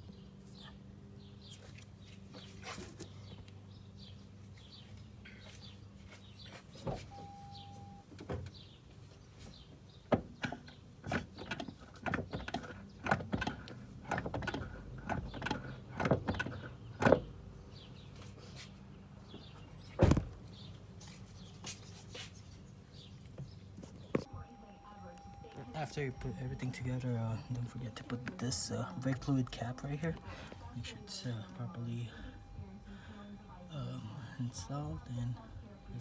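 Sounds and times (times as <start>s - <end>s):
short electronic beep: 7.1s - 8.0s
brake pedal clunks and knocks: 9.5s - 18.1s, 19.3s - 20.7s.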